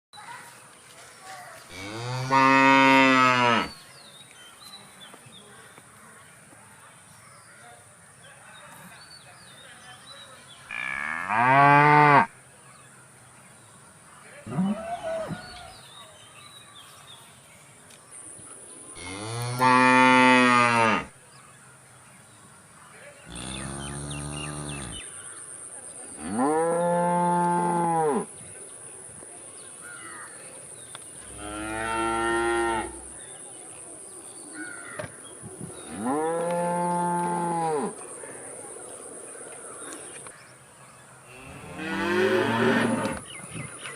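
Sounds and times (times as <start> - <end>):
cows mooing: 41.4 - 43.2.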